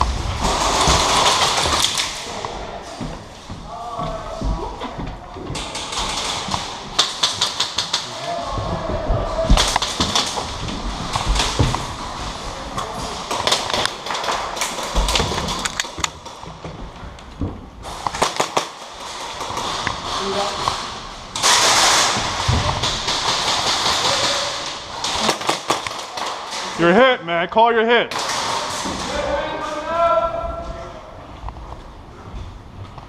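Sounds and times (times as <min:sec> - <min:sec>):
airsoft guns firing: 0:00.3 - 0:02.2, 0:05.6 - 0:08.2, 0:09.5 - 0:12.0, 0:13.2 - 0:16.4, 0:17.8 - 0:27.0, 0:28.1 - 0:29.1.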